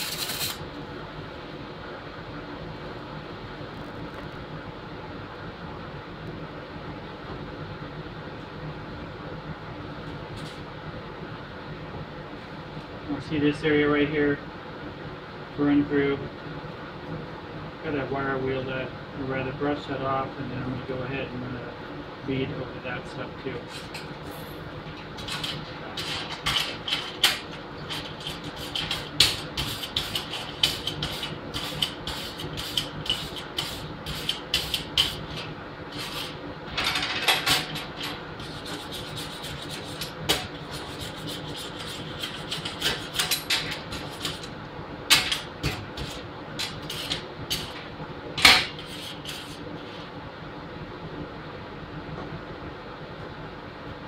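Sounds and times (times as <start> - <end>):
wire brush scrubbing metal: 0.0 - 0.6, 25.2 - 36.4, 37.6 - 44.5, 45.2 - 47.8, 48.6 - 49.6.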